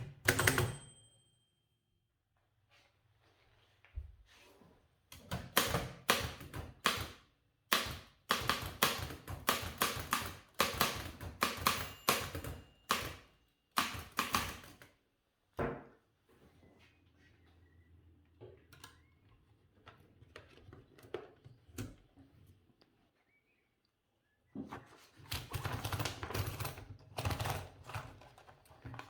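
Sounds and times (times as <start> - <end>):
typewriter keys clacking: 8.3 - 14.8.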